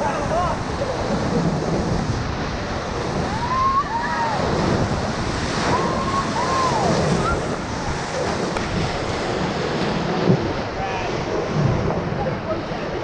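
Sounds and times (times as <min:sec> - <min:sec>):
river rapid rushing: 0:00.0 - 0:13.0
wind on microphone: 0:00.0 - 0:13.0
people whooping: 0:03.3 - 0:04.5, 0:05.7 - 0:07.6.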